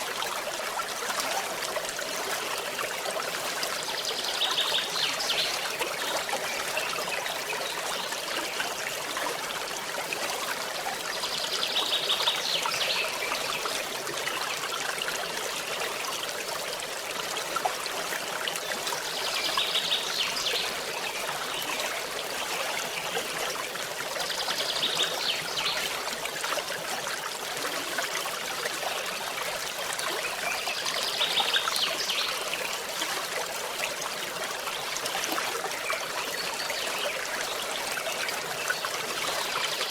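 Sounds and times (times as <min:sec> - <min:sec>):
stream running over stones: 0:00.0 - 0:39.9.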